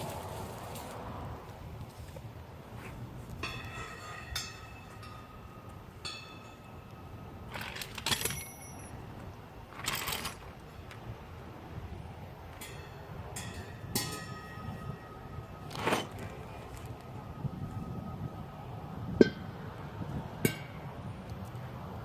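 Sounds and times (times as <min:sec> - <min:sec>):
metallic clinks: 0:03.4 - 0:09.2.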